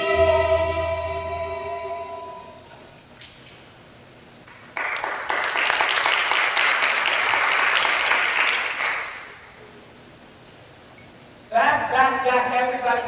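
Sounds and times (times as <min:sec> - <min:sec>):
audience applause: 0:04.5 - 0:09.4.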